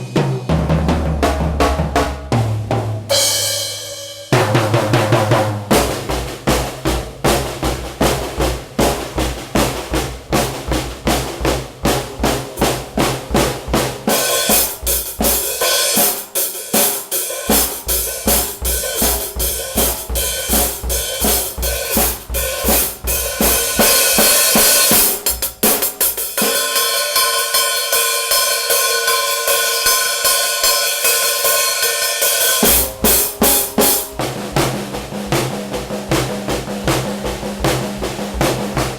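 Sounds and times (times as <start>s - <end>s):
bass drum: 0.0s - 15.7s, 17.5s - 26.2s, 32.6s - 38.9s
cymbals: 0.0s - 38.9s
snare drum: 0.0s - 38.9s.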